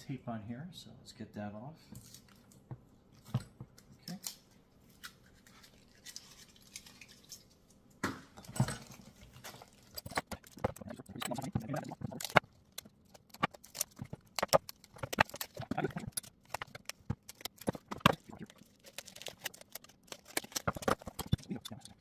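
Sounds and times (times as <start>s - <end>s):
clicks and knocks of parts handled: 8.4s - 22.0s
packing tape peeling off metal: 12.2s - 21.7s.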